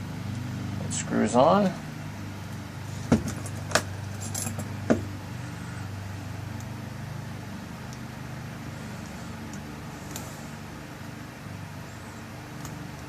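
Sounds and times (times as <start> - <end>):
steady low hum: 0.0 - 13.0
small metal clicks and clinks: 3.4 - 4.7.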